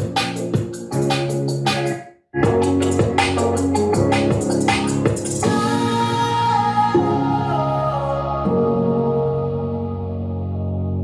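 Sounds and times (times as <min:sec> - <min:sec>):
electronic music beat hits: 0:00.0 - 0:06.1.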